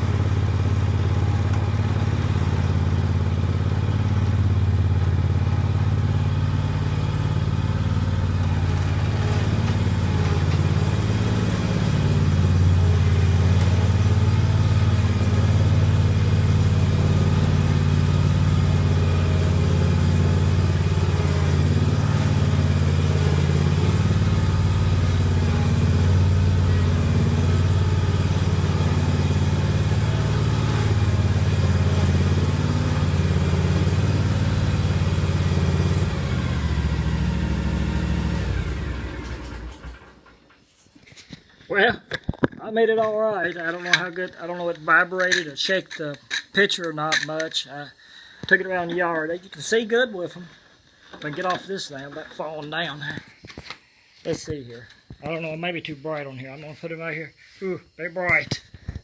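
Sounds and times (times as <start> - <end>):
mower engine running: 0.0 - 40.5.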